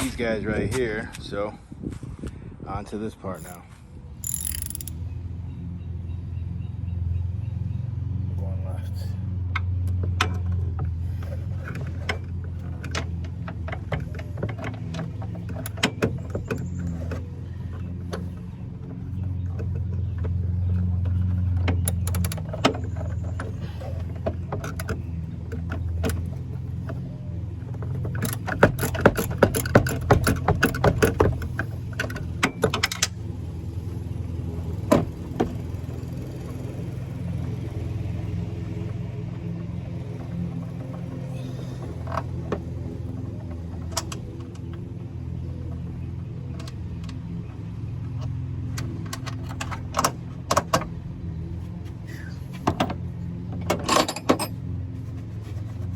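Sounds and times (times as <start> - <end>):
metal hand tool clicks: 4.2 - 5.0.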